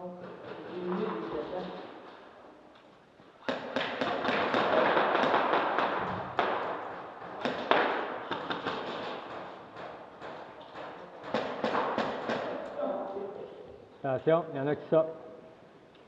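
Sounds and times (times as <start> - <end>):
airsoft guns firing: 3.4 - 12.7.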